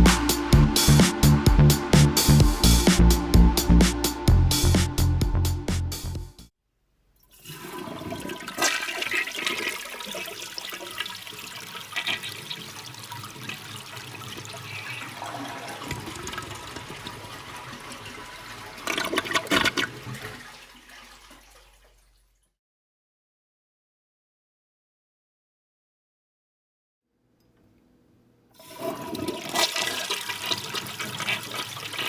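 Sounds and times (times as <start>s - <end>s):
toilet flushing: 7.2s - 22.4s, 28.6s - 32.0s.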